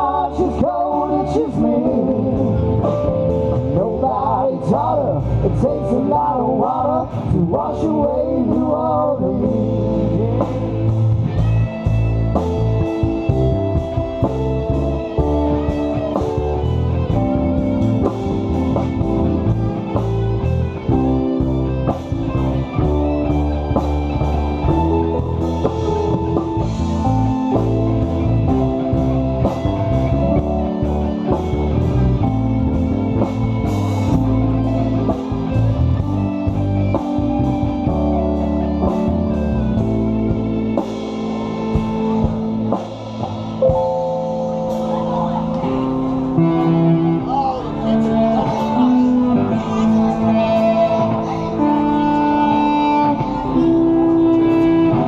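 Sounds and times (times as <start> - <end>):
drum kit: 0.0 - 5.6, 6.2 - 55.0
bass guitar: 0.0 - 55.0
electric guitar playing: 0.0 - 55.0
keyboards: 0.0 - 55.0.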